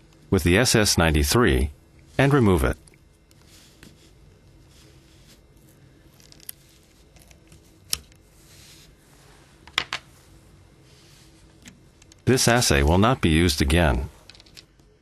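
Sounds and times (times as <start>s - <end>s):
faint rustling and peeling: 2.0s - 11.9s.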